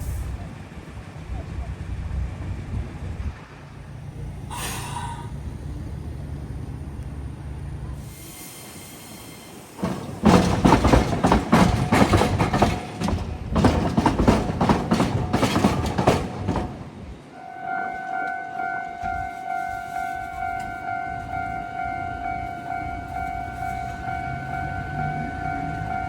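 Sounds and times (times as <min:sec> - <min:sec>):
train wheels clattering over rail joints: 0:07.9 - 0:17.3
steady ringing tone: 0:17.3 - 0:26.0.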